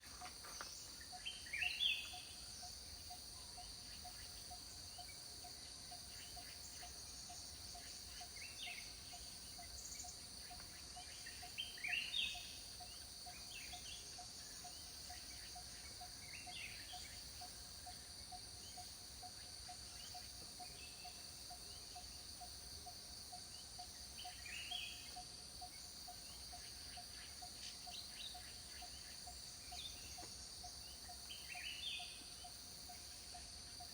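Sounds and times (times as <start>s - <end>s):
high-pitched insect chorus: 0.0s - 33.9s.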